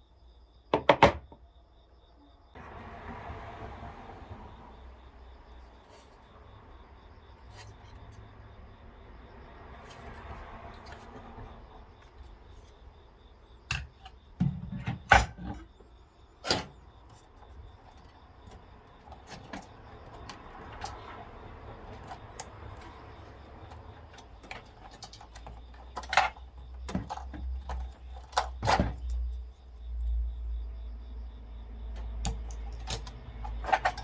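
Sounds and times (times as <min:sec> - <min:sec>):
computer hardware clicking and knocking: 0:00.7 - 0:01.4.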